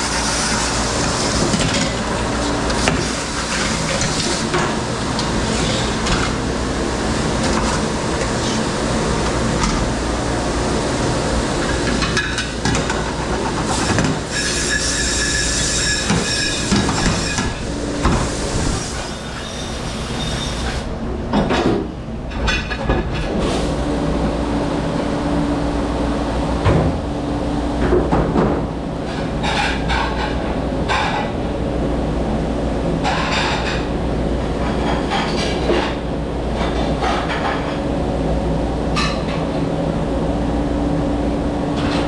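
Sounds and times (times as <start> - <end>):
machine hum and rumble: 0.0 - 42.0
dishes and utensils clattering: 29.1 - 31.4.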